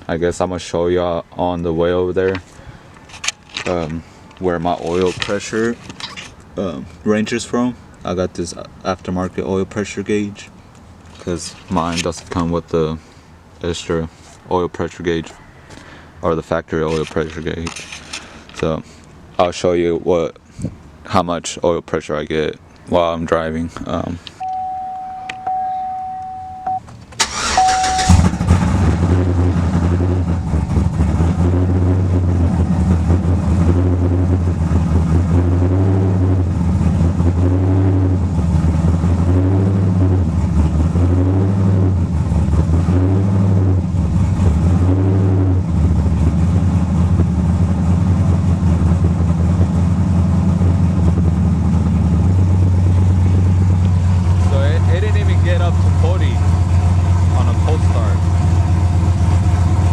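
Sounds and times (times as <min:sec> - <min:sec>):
truck engine cranking and idling: 0:00.0 - 0:19.6, 0:24.0 - 0:59.9
warning chime: 0:24.4 - 0:28.3.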